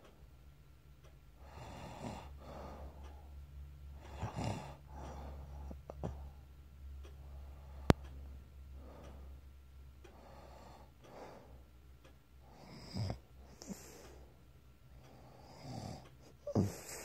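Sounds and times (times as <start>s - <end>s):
person snoring: 4.0s - 6.2s, 15.4s - 17.0s.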